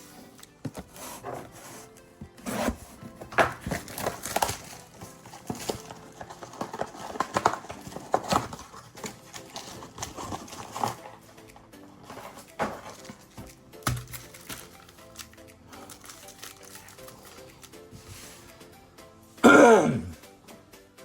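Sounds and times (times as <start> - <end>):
background music: 0.0 - 21.0
card packs being ripped open: 2.4 - 11.3, 12.1 - 17.9.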